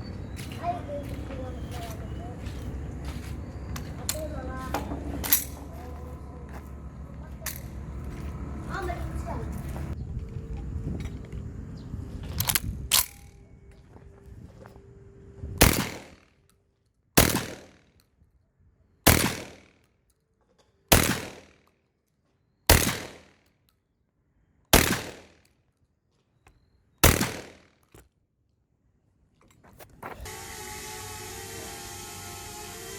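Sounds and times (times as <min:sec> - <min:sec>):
shotgun shots: 0:15.6 - 0:16.2, 0:17.2 - 0:17.8, 0:19.1 - 0:19.7, 0:20.9 - 0:21.5, 0:22.7 - 0:23.3, 0:24.8 - 0:25.4, 0:27.0 - 0:27.7.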